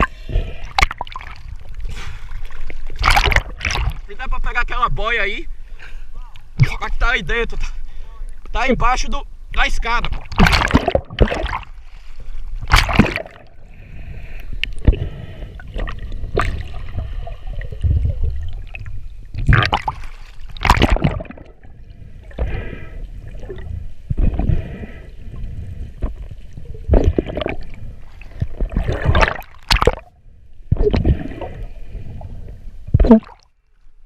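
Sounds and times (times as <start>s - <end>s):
water sloshing and gurgling: 0.0s - 5.8s, 9.4s - 34.0s.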